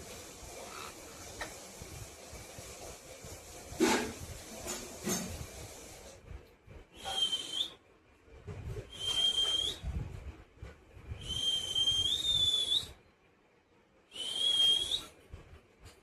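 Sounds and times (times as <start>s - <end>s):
faint hiss: 0.0s - 7.8s, 14.0s - 16.0s
high-pitched whistle: 7.0s - 7.8s, 8.9s - 10.0s, 11.2s - 13.0s, 14.1s - 15.2s.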